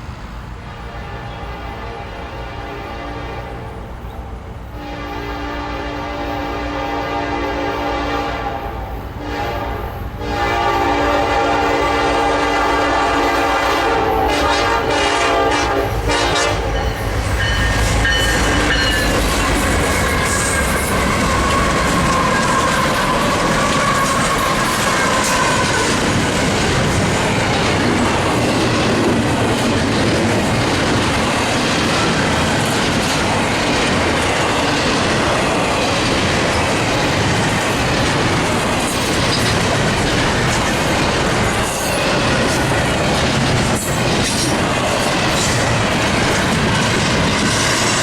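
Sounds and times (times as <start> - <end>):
train wheels rushing on rail: 0.0 - 48.0.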